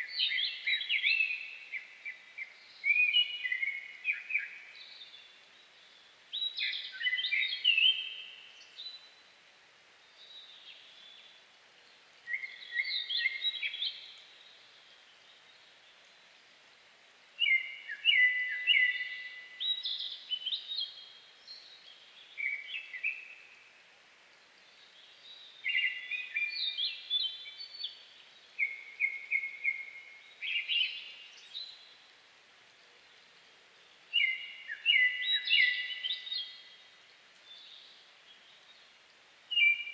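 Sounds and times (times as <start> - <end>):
faint forest background: 0.0 - 39.9
thrush singing whistled notes: 12.2 - 14.2, 17.4 - 23.6, 25.2 - 31.9, 34.1 - 36.8, 39.5 - 39.9.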